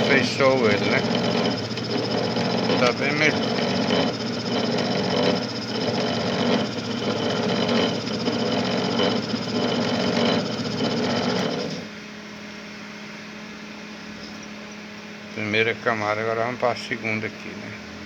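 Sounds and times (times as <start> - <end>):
coil-winding machine running: 0.0 - 11.9
gear reducer growling: 0.0 - 11.9.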